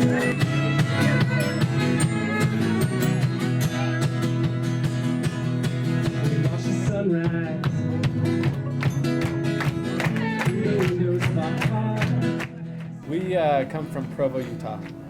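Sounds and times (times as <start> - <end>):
band playing a song: 0.0 - 8.8
strummed acoustic guitar: 0.0 - 15.0.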